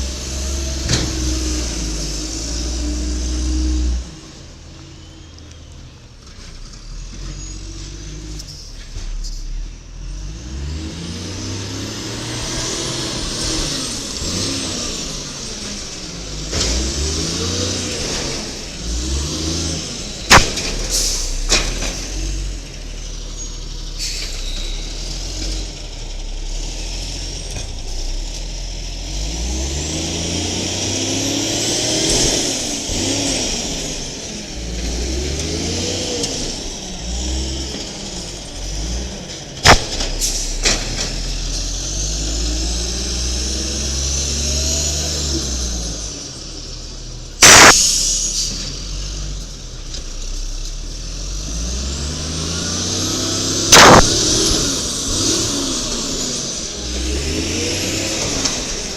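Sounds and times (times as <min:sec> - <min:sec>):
garbage truck engine revving: 0:00.0 - 0:04.8, 0:06.2 - 0:58.9
sharp bangs: 0:20.2 - 0:22.4, 0:39.6 - 0:41.2, 0:47.4 - 0:48.6, 0:53.7 - 0:55.3.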